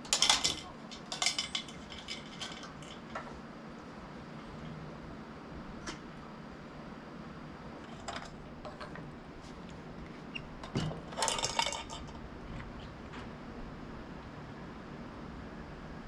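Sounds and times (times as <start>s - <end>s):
tableware clicking and clinking: 0.0s - 3.3s, 10.7s - 12.1s.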